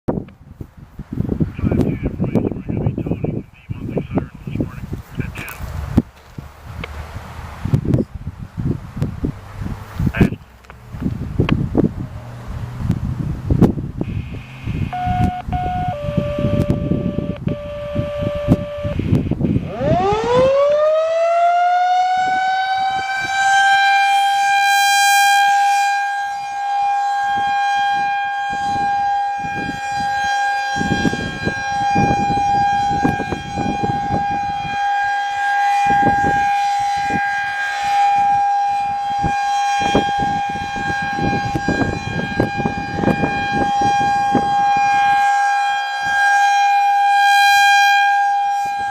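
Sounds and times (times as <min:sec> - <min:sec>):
wind buffeting microphone: 0:00.1 - 0:24.7, 0:26.0 - 0:48.9
tornado siren wailing: 0:11.4 - 0:48.9
two-step tone: 0:14.0 - 0:19.8.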